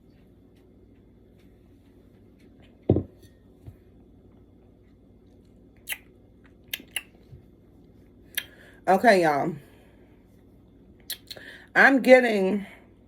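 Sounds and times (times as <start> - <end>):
wet lip smacks: 5.8 - 7.2.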